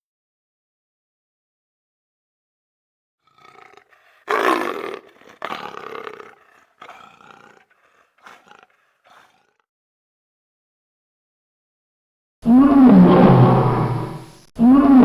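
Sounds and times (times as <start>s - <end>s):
leopard roaring calls: 3.3s - 9.5s.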